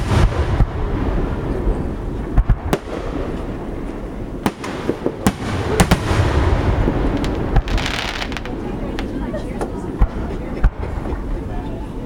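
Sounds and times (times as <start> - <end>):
fireworks booming: 0.0 - 9.2
fireworks rumble and crackle: 0.0 - 12.0.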